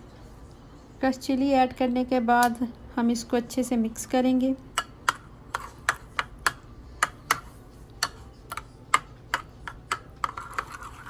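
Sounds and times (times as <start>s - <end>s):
spoon tapping against a bowl: 4.7s - 10.7s.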